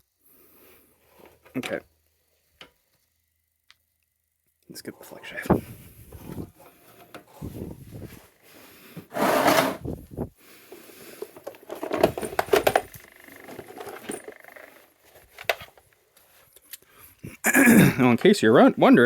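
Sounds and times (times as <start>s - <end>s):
loud scrape: 9.0s - 9.9s
gear rubbing and rustling: 10.7s - 16.6s.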